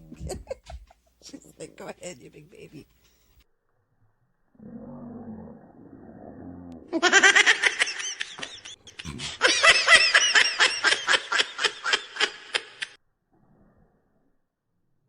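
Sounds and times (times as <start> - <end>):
high-pitched laughter: 0.0 - 1.0.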